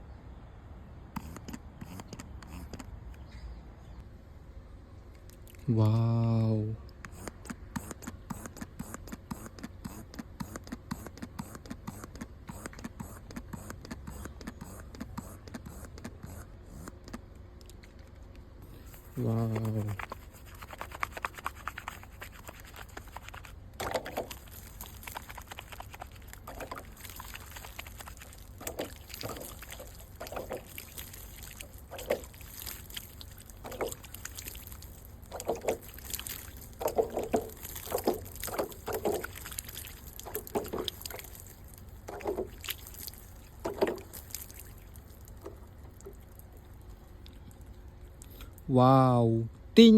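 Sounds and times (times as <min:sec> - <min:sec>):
water sloshing and splashing: 0:18.6 - 0:48.0.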